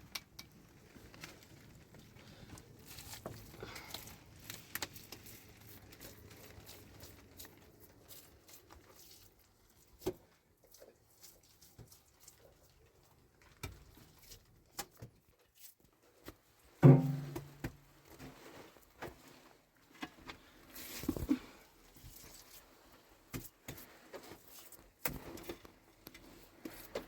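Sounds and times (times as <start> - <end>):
faint knocks and taps: 16.8 - 17.8.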